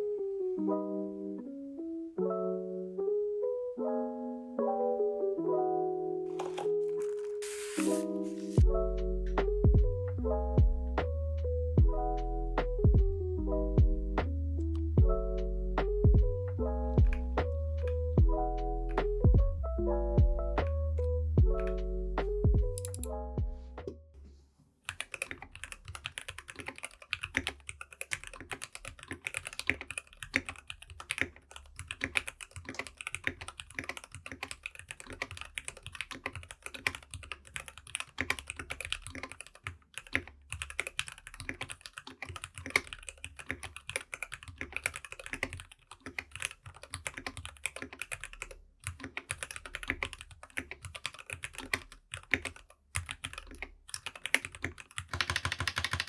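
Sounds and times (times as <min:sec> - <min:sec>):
mechanical keyboard typing: 0:06.3 - 0:08.1, 0:21.5 - 0:21.8, 0:22.5 - 0:23.2, 0:24.9 - 0:56.0.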